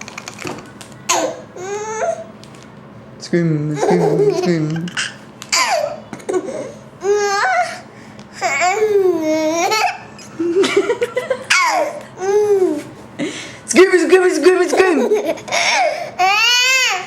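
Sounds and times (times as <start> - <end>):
baby laughing: 3.7 - 7.8, 8.4 - 12.9, 14.4 - 17.0.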